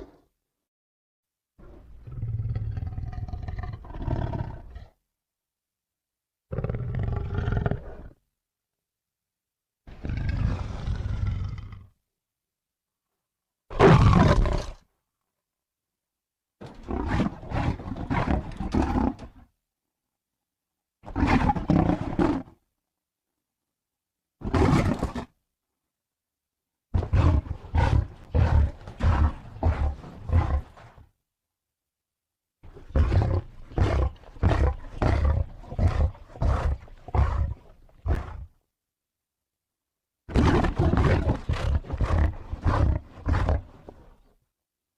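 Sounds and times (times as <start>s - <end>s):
big cat roaring: 1.6s - 5.0s, 6.5s - 8.2s, 9.9s - 12.0s, 13.7s - 14.8s, 16.8s - 19.4s, 21.1s - 22.5s, 24.4s - 25.3s, 27.0s - 31.1s, 32.7s - 38.6s, 40.3s - 44.2s.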